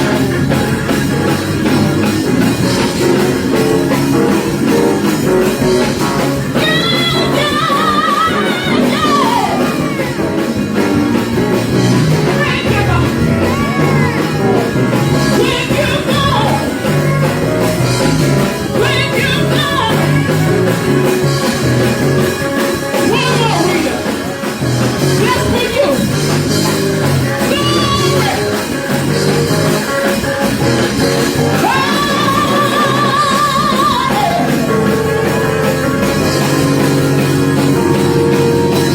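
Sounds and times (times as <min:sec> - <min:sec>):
loud band music: 0:00.0 - 0:38.9
person singing: 0:06.5 - 0:10.5, 0:31.6 - 0:35.1.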